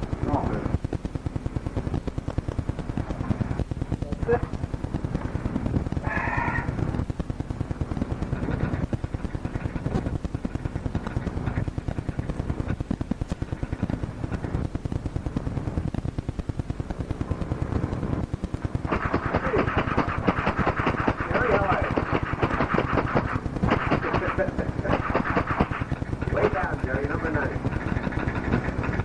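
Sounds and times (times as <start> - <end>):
office machinery clatter: 0.0 - 29.0.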